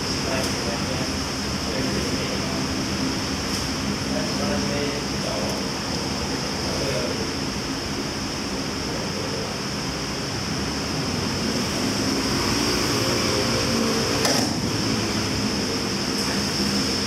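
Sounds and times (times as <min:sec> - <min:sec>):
mechanical hum and hiss: 0:00.0 - 0:17.0
sharp thump: 0:14.2 - 0:14.6.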